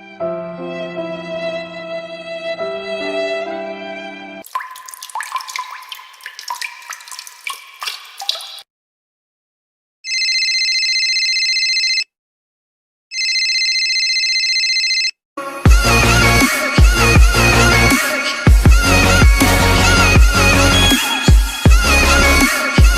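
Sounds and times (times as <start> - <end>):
water drops dripping: 4.4 - 8.6.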